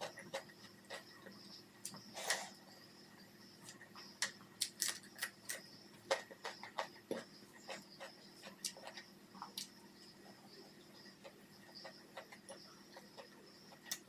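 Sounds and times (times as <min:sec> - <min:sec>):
person chewing food: 0:00.0 - 0:02.5, 0:04.6 - 0:09.8.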